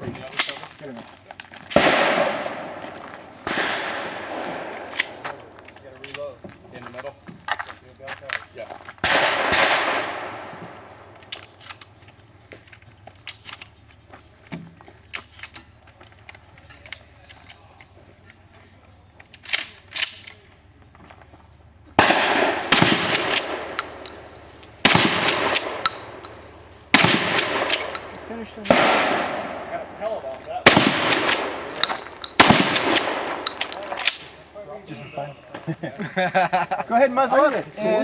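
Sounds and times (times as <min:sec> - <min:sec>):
shotgun blasts echoing: 0:01.7 - 0:05.6, 0:09.0 - 0:11.2, 0:22.0 - 0:34.4
small clicks and knocks: 0:31.3 - 0:32.4.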